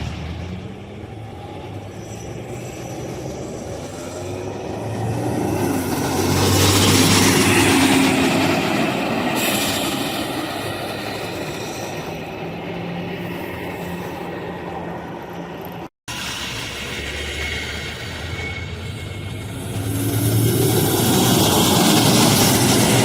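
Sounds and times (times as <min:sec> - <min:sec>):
bus driving past: 0:00.0 - 0:23.0.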